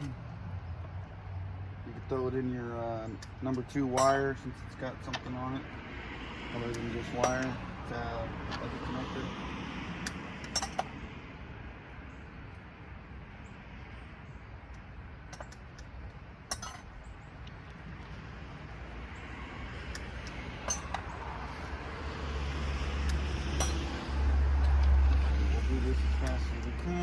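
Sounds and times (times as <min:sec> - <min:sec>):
metal parts clinking: 0:10.4 - 0:10.9, 0:16.5 - 0:17.0, 0:19.9 - 0:21.1, 0:23.6 - 0:25.3.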